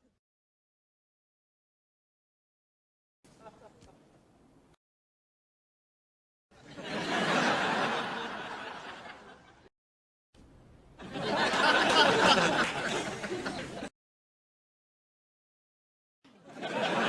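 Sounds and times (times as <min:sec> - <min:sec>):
studio audience laughing: 0:06.6 - 0:09.7, 0:11.0 - 0:13.9, 0:16.3 - 0:17.0.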